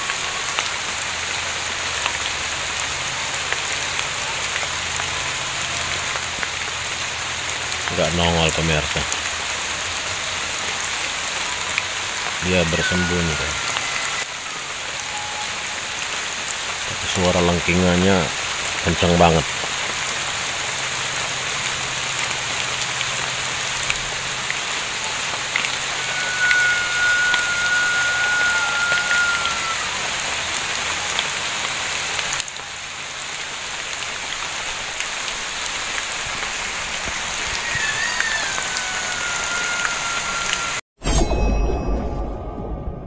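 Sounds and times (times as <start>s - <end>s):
steady rain: 0.0s - 40.8s
shrill whistling calls: 12.3s - 17.2s, 24.9s - 31.1s, 37.4s - 40.8s.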